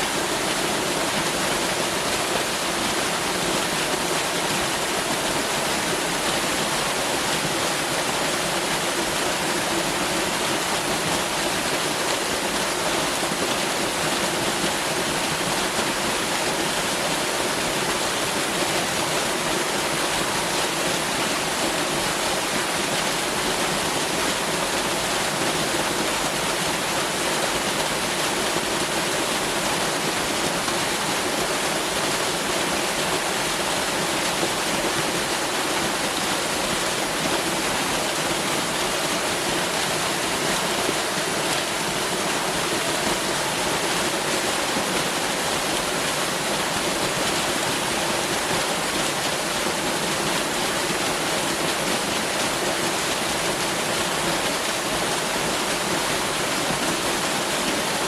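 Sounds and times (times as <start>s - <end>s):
waterfall roar: 0.0s - 58.0s.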